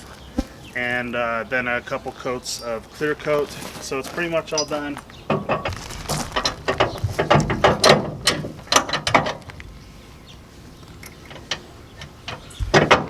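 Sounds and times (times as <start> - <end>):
metal hitch clicking and clanking: 4.4 - 9.6, 11.0 - 13.0.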